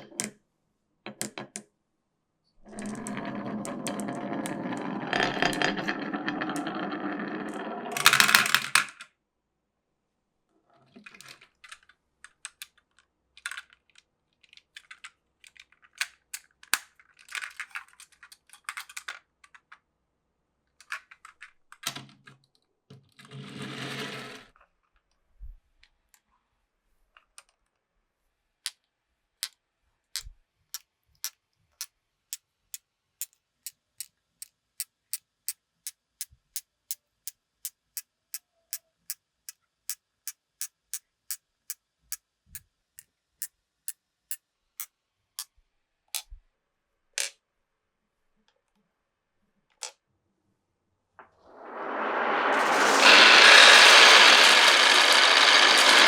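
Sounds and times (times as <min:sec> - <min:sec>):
marbles rolling in wooden run: 0:02.6 - 0:08.9, 0:23.4 - 0:24.5, 0:51.5 - 0:56.0
marbles clattering: 0:02.7 - 0:08.9, 0:51.6 - 0:56.0.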